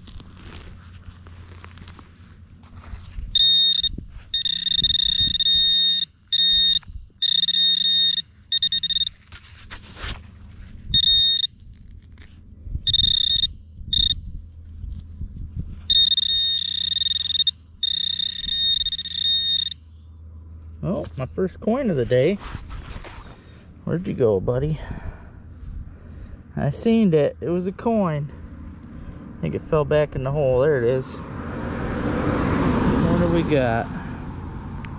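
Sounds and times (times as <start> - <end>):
low scraping and scuffing: 0.0 - 3.4, 9.0 - 11.0, 21.0 - 23.6
metal detector tone: 3.3 - 9.3, 10.9 - 11.7, 12.8 - 14.4, 15.8 - 20.0.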